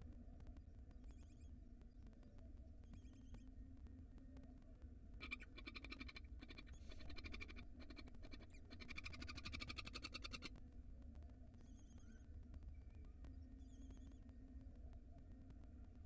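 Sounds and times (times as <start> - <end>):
owls chittering: 5.2 - 10.5.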